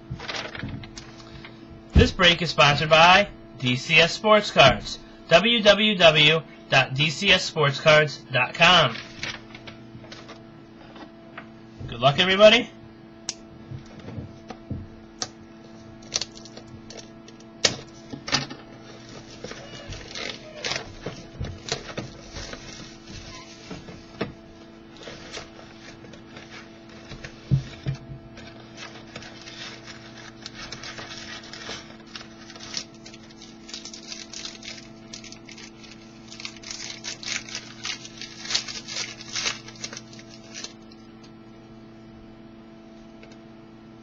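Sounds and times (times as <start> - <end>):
steady electrical hum: 0.0 - 44.0
wrappers crinkling and tearing: 0.2 - 1.3, 16.0 - 17.1, 18.8 - 24.0, 28.4 - 40.9.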